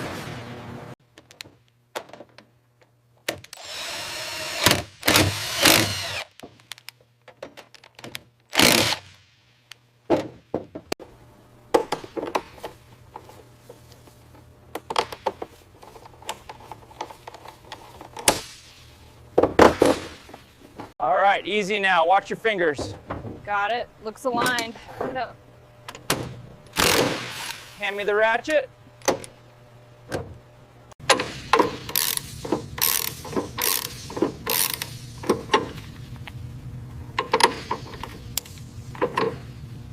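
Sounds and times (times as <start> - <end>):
power tool running: 3.6 - 6.3, 8.5 - 9.1, 26.7 - 27.8, 31.8 - 35.2.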